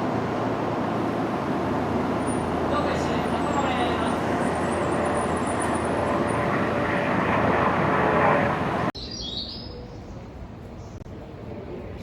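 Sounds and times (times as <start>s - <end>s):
train rushing noise: 0.0s - 8.9s
station ambience: 0.0s - 9.0s.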